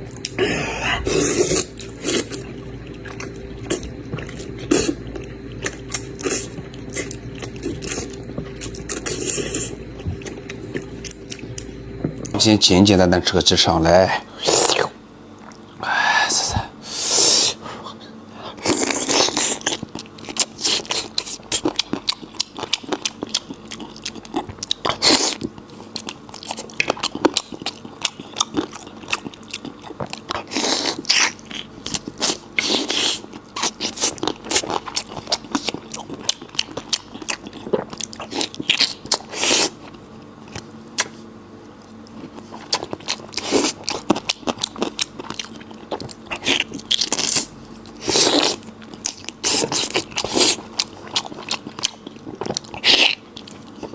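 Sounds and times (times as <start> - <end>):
wet chewing: 1.0 - 12.4, 18.6 - 53.9
bites and slurps: 42.1 - 53.9.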